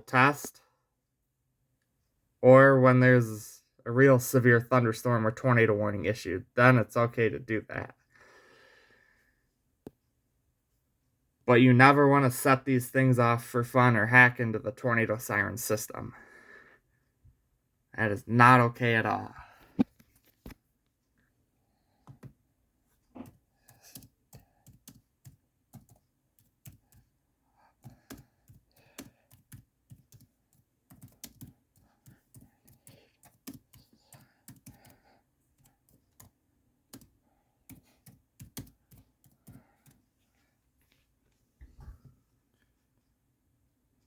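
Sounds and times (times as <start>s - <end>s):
computer keyboard typing: 23.2s - 40.0s.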